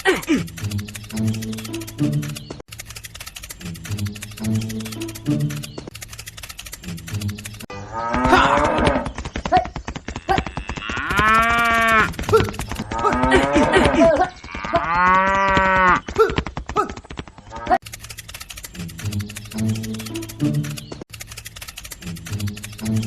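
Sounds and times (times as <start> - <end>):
cow mooing: 7.8 - 9.0, 10.2 - 12.1, 12.9 - 16.0.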